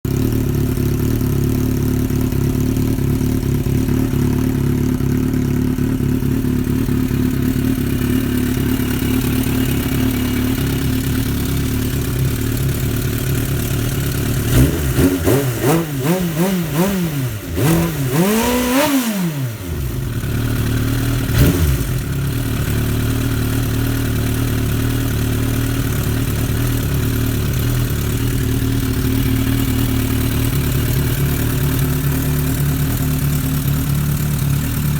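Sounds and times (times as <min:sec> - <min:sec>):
motorcycle engine idling: 0:00.0 - 0:34.9
motorcycle throttle blips: 0:00.1 - 0:34.9.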